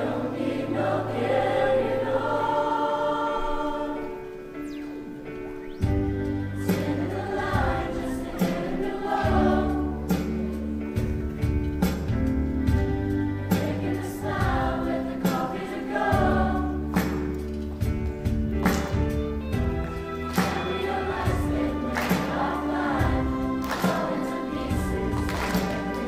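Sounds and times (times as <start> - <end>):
choir singing: 0.0 - 18.0, 19.5 - 26.0
bass notes: 5.0 - 15.4.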